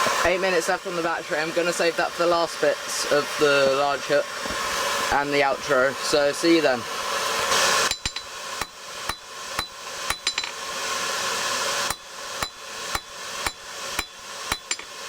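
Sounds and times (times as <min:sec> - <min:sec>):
hammer striking anvil: 0:07.9 - 0:10.6, 0:11.9 - 0:15.0.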